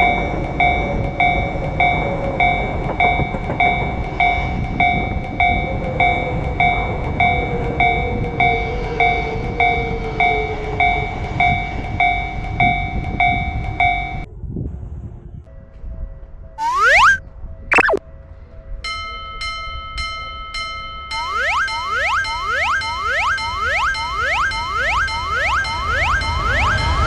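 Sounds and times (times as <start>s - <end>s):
train whine falling in pitch: 16.6s - 18.0s, 21.2s - 27.0s
railroad crossing bell ringing: 18.9s - 27.0s.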